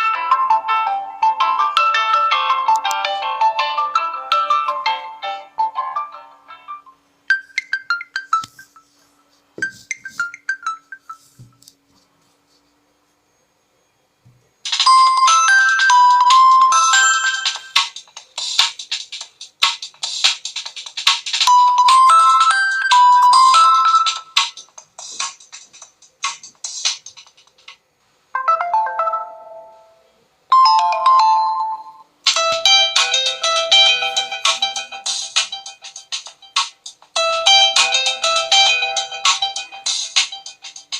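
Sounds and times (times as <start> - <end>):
bright phone chime notes: 14.8 - 17.9, 21.5 - 24.4, 28.4 - 35.1.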